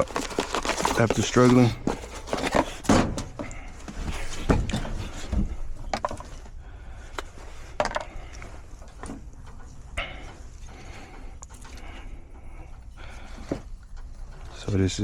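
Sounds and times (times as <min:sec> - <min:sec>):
hard parts knocking and clinking: 0:07.2 - 0:15.0.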